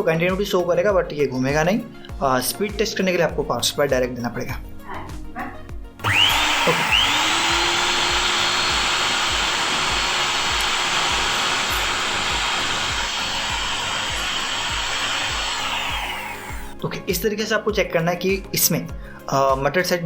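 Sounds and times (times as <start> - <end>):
electric motor whining: 6.0 - 16.8.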